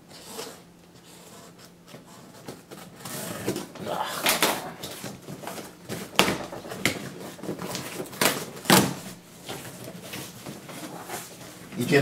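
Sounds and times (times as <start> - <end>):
sharp clicks and knocks: 6.2 - 9.2.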